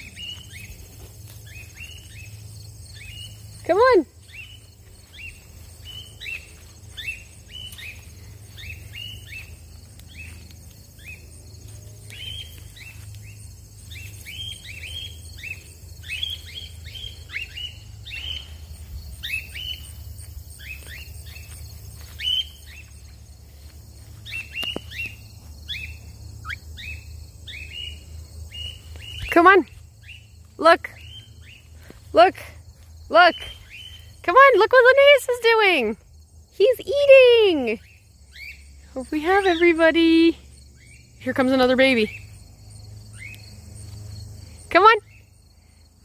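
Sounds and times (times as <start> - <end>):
low rumble of outdoor noise: 0.0 - 46.0.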